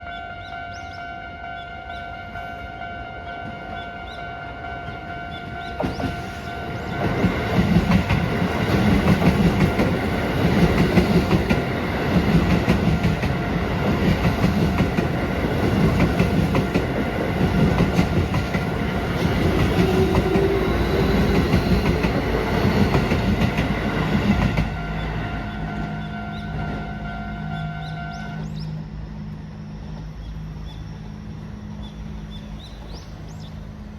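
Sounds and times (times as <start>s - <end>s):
level crossing warning bell: 0.0s - 9.0s, 9.6s - 17.5s, 18.4s - 28.4s
train wheels clicking on rails: 5.6s - 25.2s.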